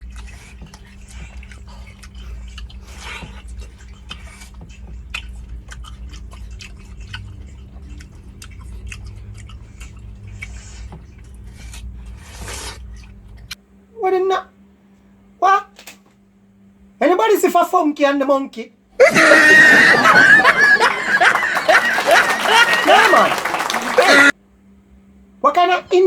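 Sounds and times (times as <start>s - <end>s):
chewing watermelon: 0.0s - 13.6s
low hum: 0.0s - 13.9s.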